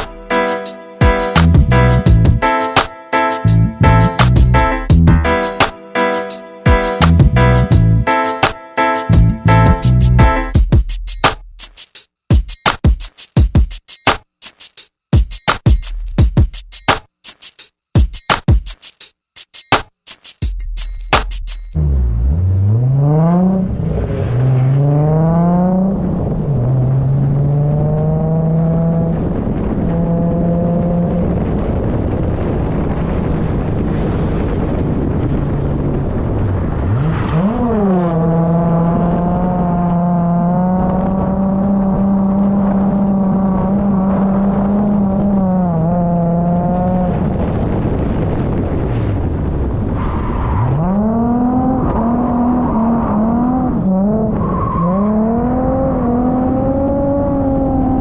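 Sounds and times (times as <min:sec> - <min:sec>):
tyre and road noise: 0:00.0 - 0:02.6, 0:03.4 - 0:05.7, 0:20.4 - 0:31.4, 0:32.9 - 0:58.0
car engine revving: 0:21.8 - 0:31.3, 0:36.7 - 0:47.2, 0:50.6 - 0:58.0.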